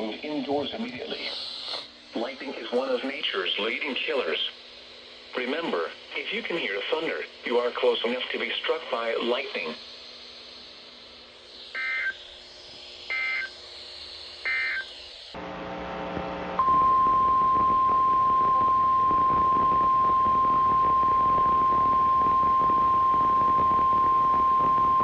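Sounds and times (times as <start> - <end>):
data burst tones: 11.6 - 12.4, 13.0 - 13.6, 14.4 - 15.3, 16.6 - 25.0
steady alarm tone: 11.6 - 12.4, 13.0 - 13.6, 14.4 - 15.4, 16.6 - 25.0.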